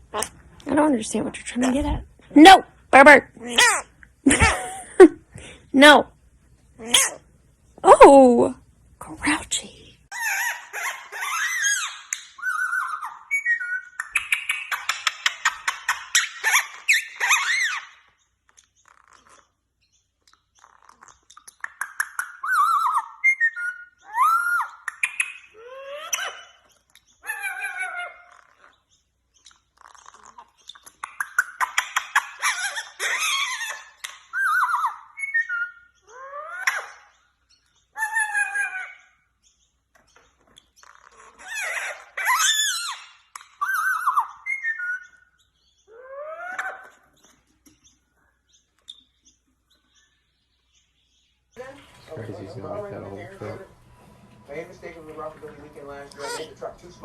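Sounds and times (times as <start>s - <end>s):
parrot whistling and calling: 10.1s - 18.2s, 20.6s - 28.8s, 29.4s - 39.3s, 40.8s - 47.2s, 56.1s - 57.0s.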